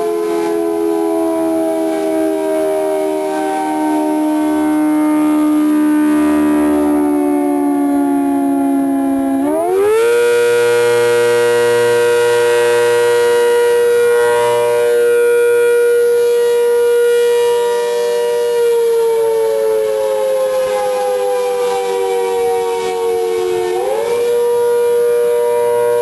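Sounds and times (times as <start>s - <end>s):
warning siren wailing: 0.0s - 26.0s.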